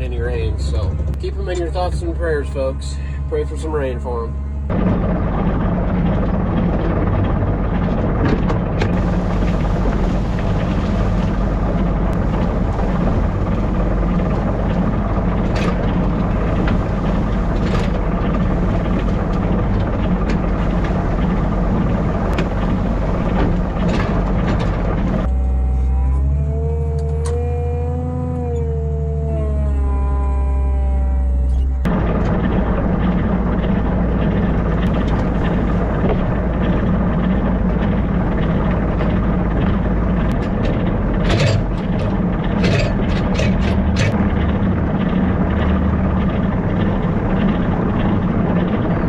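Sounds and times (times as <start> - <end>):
farm vehicle engine running: 0.0 - 49.0
low hum: 0.0 - 49.0
wavering drawn-out tone: 0.2 - 6.3, 25.2 - 31.9
knocks and rattles: 4.7 - 25.3, 31.5 - 49.0.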